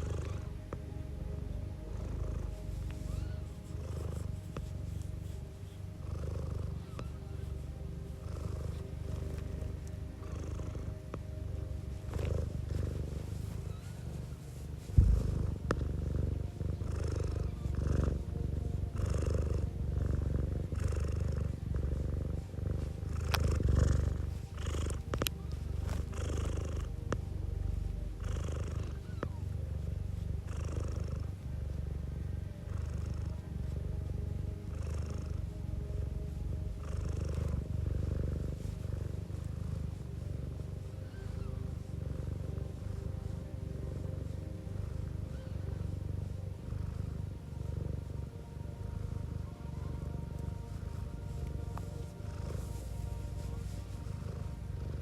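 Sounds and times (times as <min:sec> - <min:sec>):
cat purring: 0:00.0 - 0:55.0
soft thump: 0:15.0 - 0:15.3.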